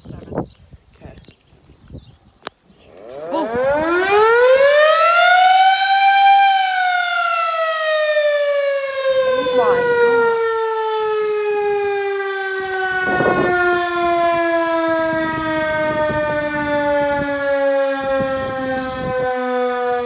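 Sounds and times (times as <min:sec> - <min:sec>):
wind buffeting microphone: 0:00.0 - 0:05.4, 0:07.9 - 0:20.0
warning siren winding down: 0:02.9 - 0:20.0.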